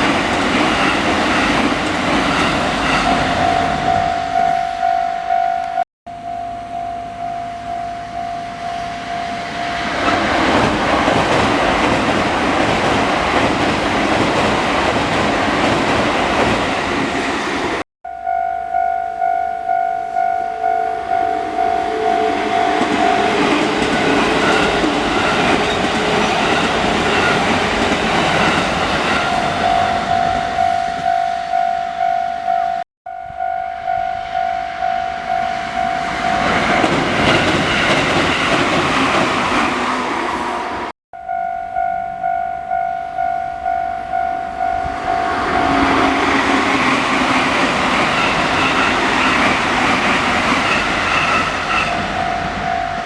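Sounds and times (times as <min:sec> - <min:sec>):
train wheels rushing: 0:00.0 - 0:04.0, 0:09.4 - 0:17.8, 0:21.7 - 0:31.1, 0:35.7 - 0:40.8, 0:44.8 - 0:53.0
level-crossing warning bell: 0:00.0 - 0:11.3, 0:18.0 - 0:38.7, 0:41.2 - 0:53.0
wheels clacking over rail joints: 0:09.9 - 0:17.0, 0:22.7 - 0:30.6.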